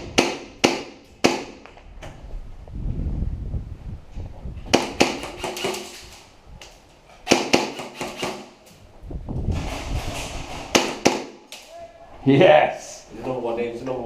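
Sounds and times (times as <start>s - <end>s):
microphone handling rumble: 1.8s - 4.7s, 8.8s - 10.7s.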